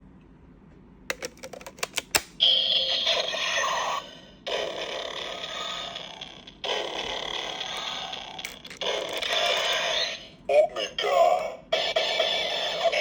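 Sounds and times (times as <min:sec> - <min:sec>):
plastic toy clicks: 0:01.1 - 0:02.3, 0:07.6 - 0:09.4
toy electronic sound effects: 0:02.4 - 0:10.3, 0:11.7 - 0:13.0.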